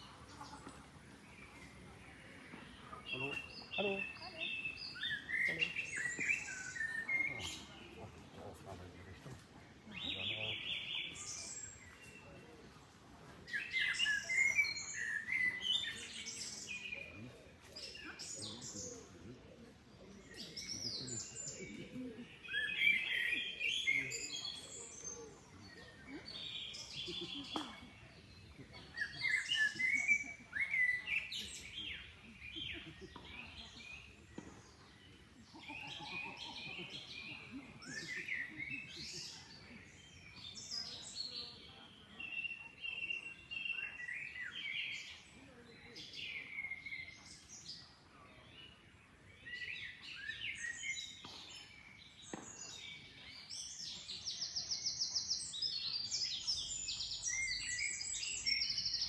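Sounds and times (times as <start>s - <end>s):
songbirds singing: 0.0s - 59.0s.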